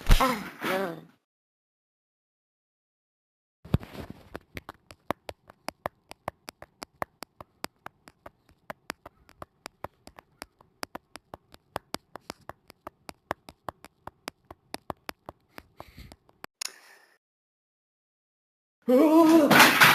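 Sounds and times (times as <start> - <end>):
sharp mouth clicks: 5.1 - 16.5.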